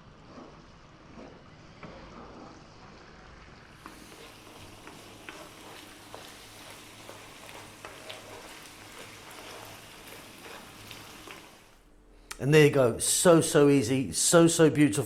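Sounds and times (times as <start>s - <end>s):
pasta sizzling in a pan: 0.0s - 11.9s.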